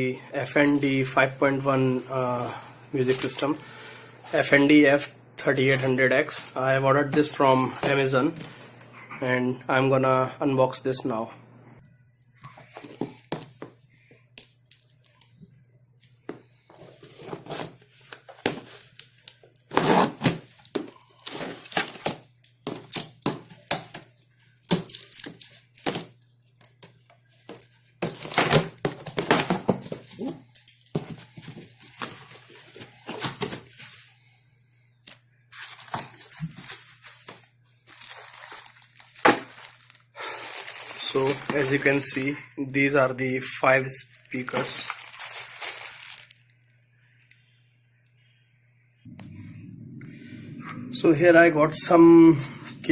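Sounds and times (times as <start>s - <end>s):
cardboard tearing and crinkling: 19.7s - 20.5s, 35.6s - 42.0s, 44.2s - 46.4s.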